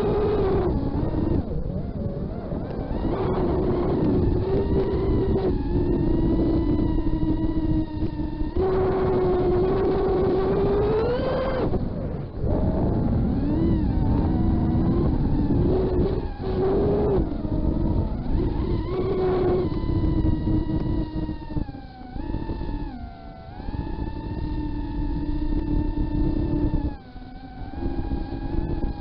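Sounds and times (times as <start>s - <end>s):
quadcopter motors whining: 0.0s - 29.0s.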